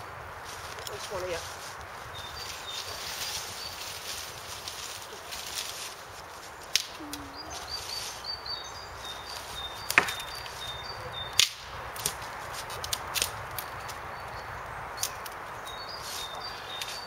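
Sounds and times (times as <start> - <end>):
small bird chirping: 2.1 - 5.4, 6.4 - 11.6, 13.6 - 17.0
sharp wooden cracks: 4.5 - 7.2, 9.4 - 15.6.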